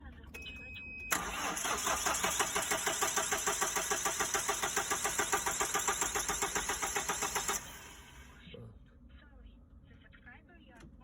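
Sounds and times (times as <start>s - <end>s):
starter motor cranking diesel engine: 1.1s - 8.4s.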